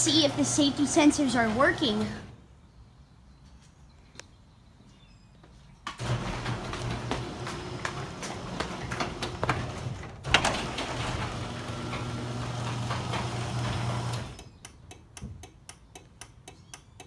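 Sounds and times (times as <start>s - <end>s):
garage door opener motor humming: 0.0s - 2.5s, 6.0s - 14.6s
rapid even ticking: 14.4s - 17.0s.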